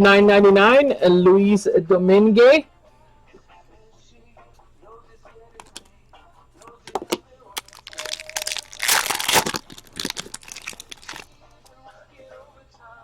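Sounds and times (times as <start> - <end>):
cards rustling: 6.6 - 11.3
wrapper tearing: 7.6 - 11.3.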